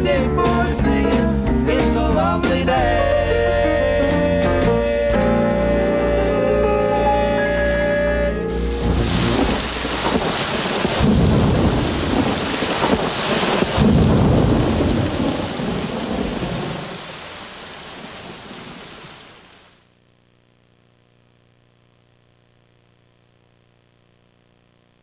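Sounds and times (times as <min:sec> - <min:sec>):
thunder rumbling: 0:07.4 - 0:19.1
heavy rain: 0:07.5 - 0:19.8.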